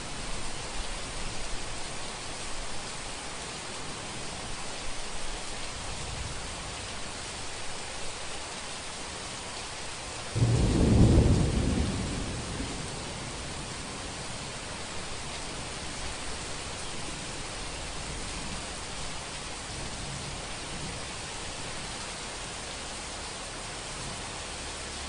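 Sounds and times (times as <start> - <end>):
heavy rain: 0.0 - 25.0
thunderclap rumbling: 10.4 - 14.8.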